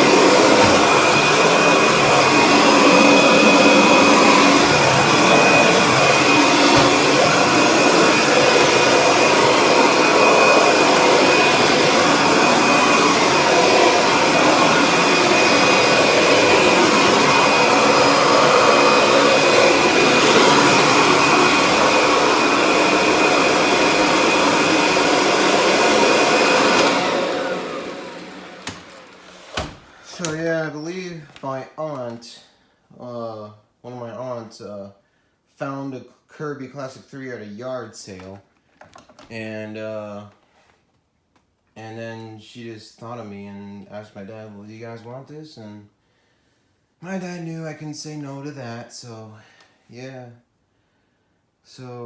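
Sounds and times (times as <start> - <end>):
vacuum motor winding down: 0.0 - 30.3
vacuum cleaner running: 0.0 - 30.9.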